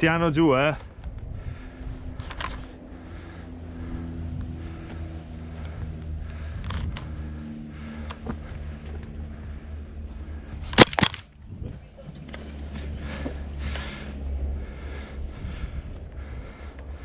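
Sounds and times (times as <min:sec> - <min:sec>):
steady low hum: 0:00.0 - 0:17.0
airsoft gun shots: 0:10.8 - 0:11.2.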